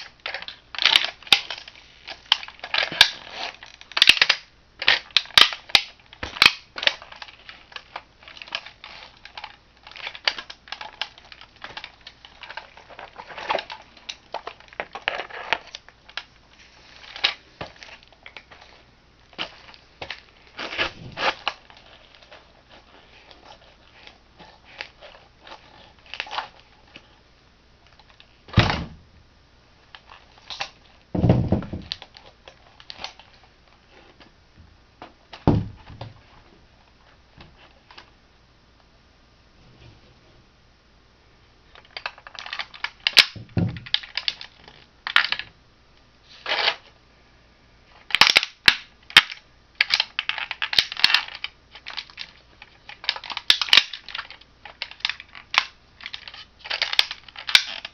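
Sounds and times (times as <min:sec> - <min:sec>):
plastic crackling and crunching: 0:00.0 - 0:27.2, 0:29.8 - 0:34.3, 0:41.7 - 0:45.6, 0:47.9 - 0:57.9
heavy thuds: 0:28.5 - 0:29.2, 0:31.1 - 0:31.9, 0:35.4 - 0:36.2.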